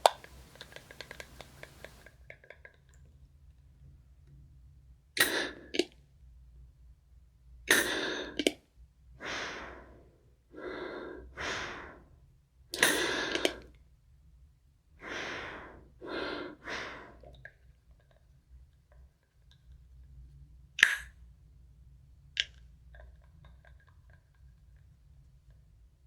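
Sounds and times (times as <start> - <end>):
breathing in and out: 0.0 - 2.0, 7.7 - 8.5, 9.2 - 12.1, 12.8 - 13.7, 15.0 - 17.3
inhaler hissing puffs: 0.0 - 2.0, 12.8 - 13.6.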